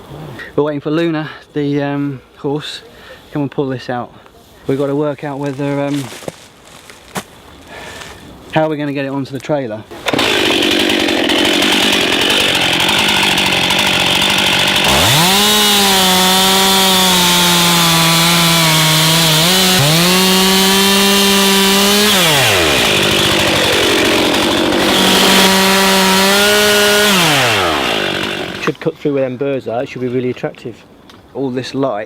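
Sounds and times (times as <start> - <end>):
chainsaw revving and cutting wood: 9.9 - 28.8.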